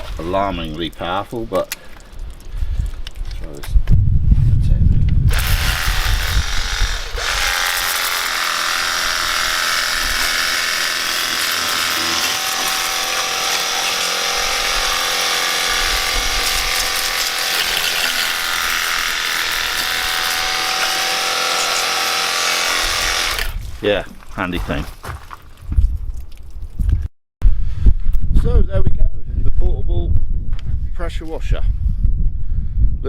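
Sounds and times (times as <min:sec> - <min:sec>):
pressure washer pump whirring: 0:05.3 - 0:23.6
water jet spraying: 0:07.2 - 0:24.0.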